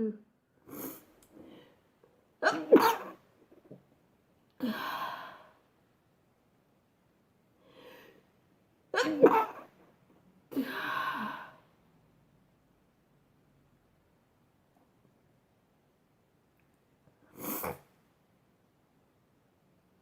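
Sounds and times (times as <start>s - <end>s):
person sneezing: 0.7s - 1.1s, 2.4s - 3.2s, 9.0s - 9.7s, 17.3s - 17.9s.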